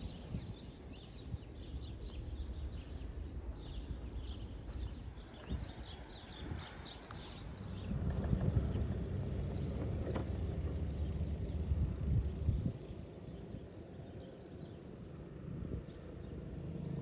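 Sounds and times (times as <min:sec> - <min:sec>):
small birds chirping: 0:00.0 - 0:17.0
wind rumble: 0:00.0 - 0:17.0.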